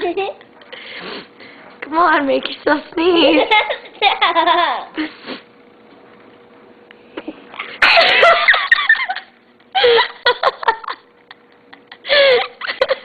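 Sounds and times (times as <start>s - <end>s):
people laughing: 7.8s - 13.0s.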